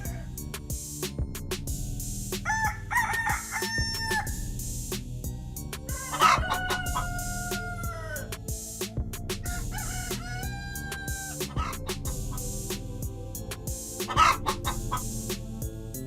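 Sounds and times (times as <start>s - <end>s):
rooster crowing: 0.0s - 0.3s, 2.4s - 4.5s, 5.9s - 8.3s, 9.4s - 12.5s, 14.1s - 15.1s
steady low hum: 1.2s - 2.4s, 11.7s - 15.8s.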